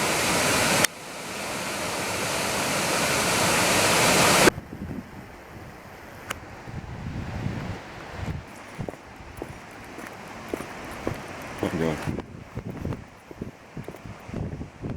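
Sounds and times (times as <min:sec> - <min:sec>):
waterfall rushing: 0:00.0 - 0:04.5, 0:07.7 - 0:13.8.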